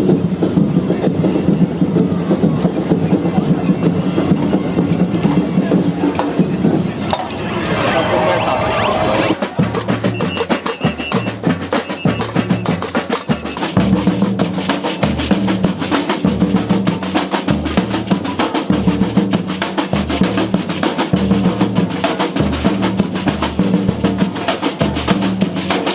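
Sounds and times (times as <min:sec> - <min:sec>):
fast dense drumming: 0:09.3 - 0:25.9.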